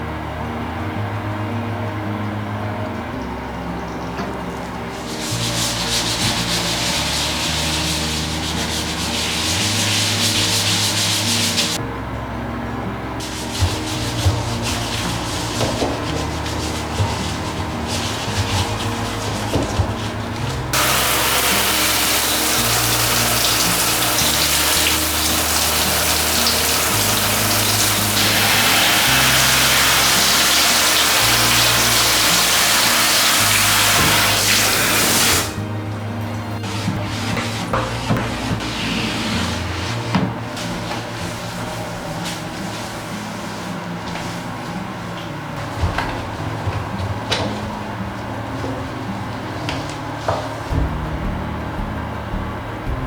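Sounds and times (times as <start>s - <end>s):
scrubbing a surface: 4.6s - 11.8s, 13.2s - 35.6s, 36.6s - 51.0s
water running from a tap: 13.3s - 35.6s.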